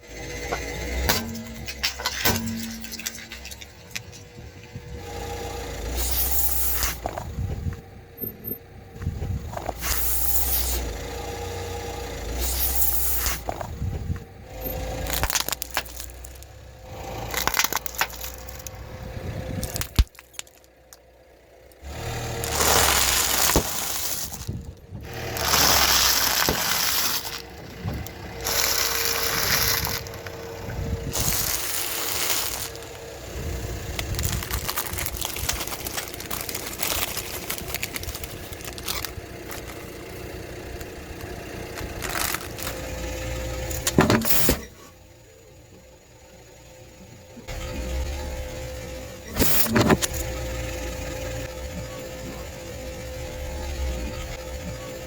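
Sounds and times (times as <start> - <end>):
car tyre crushing plastic cups: 0.4 - 4.8, 14.5 - 44.8.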